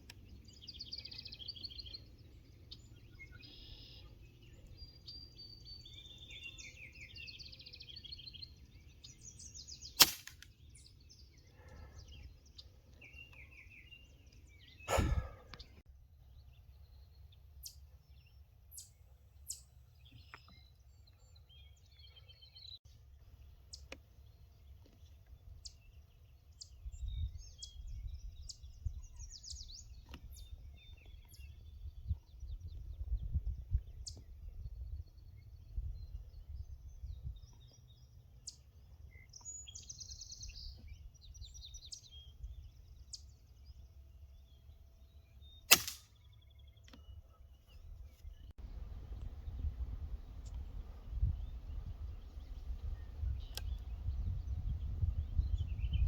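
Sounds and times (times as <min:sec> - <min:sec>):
faint bird chirps: 0:00.2 - 0:10.0
air rifle shot: 0:10.0 - 0:10.4, 0:14.9 - 0:15.5, 0:45.7 - 0:46.1
wind rumble on microphone: 0:26.6 - 0:37.7, 0:47.8 - 0:56.0.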